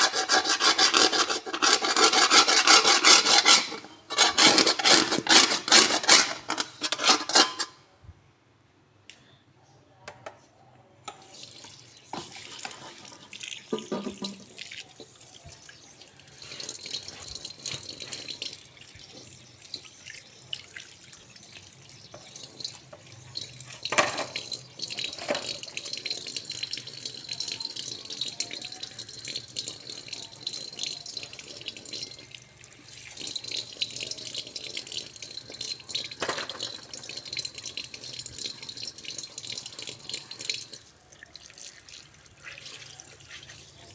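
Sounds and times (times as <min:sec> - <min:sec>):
tap water running into sink: 0:00.0 - 0:07.4, 0:11.2 - 0:15.8, 0:16.4 - 0:40.9
frying pan being scrubbed: 0:00.0 - 0:07.8
pan knocking: 0:00.1 - 0:07.8.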